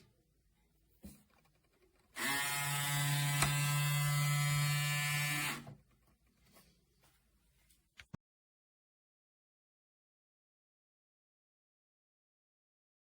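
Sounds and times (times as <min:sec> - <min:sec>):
electric shaver humming: 0:02.2 - 0:05.7.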